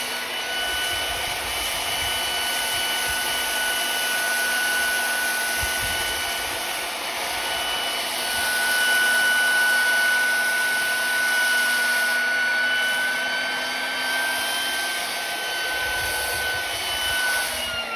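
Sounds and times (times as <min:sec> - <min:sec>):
sandblaster motor whine: 0:00.0 - 0:17.9.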